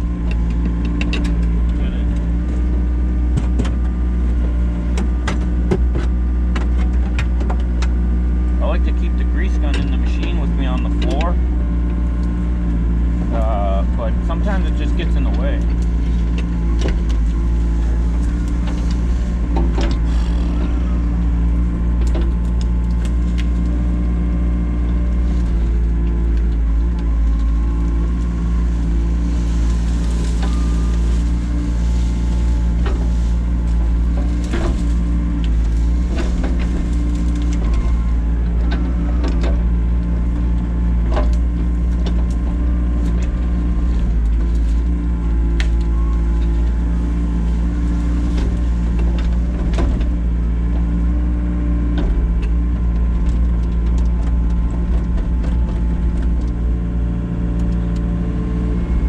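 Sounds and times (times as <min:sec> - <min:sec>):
excavator engine running: 0:00.0 - 0:59.0
excavator bucket clanking: 0:13.2 - 0:24.0, 0:24.9 - 0:51.0.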